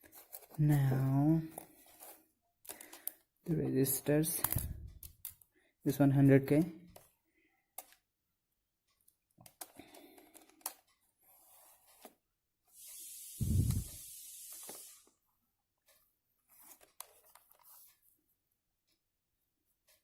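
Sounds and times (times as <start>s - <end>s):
clicks and rustles of handling: 0.0s - 5.5s, 9.0s - 12.2s, 15.8s - 18.2s
loud hiss: 12.8s - 15.0s.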